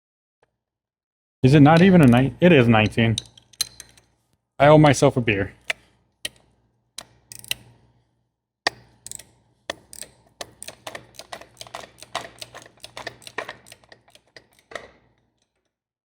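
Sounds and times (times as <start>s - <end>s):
ratchet wrench clicking: 5.7s - 7.7s, 8.7s - 15.0s.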